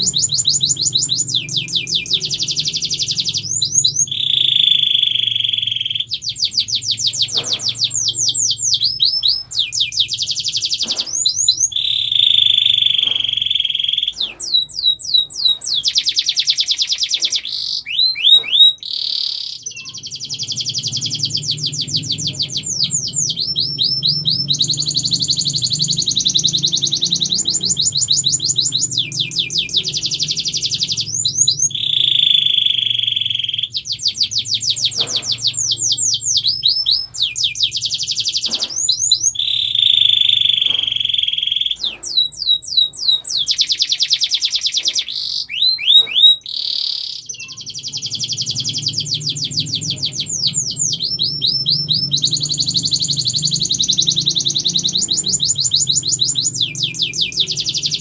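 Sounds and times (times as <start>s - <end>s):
low hum: 0.0s - 13.4s, 20.0s - 41.0s, 47.9s - 58.0s
canary singing trills: 0.0s - 58.0s.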